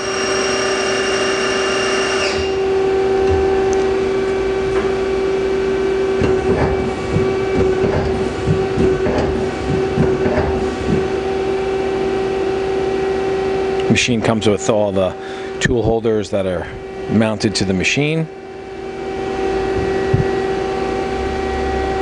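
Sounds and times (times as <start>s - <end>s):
machine spindle whine: 0.0s - 22.0s
machine steady hum: 0.0s - 22.0s
clicks and knocks: 6.2s - 11.1s.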